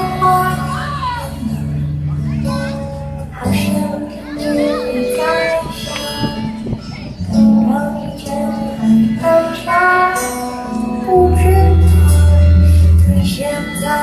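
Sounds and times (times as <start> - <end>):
instrumental accompaniment: 0.0 - 14.0
person singing: 0.0 - 14.0
loud low bass note: 11.3 - 13.3.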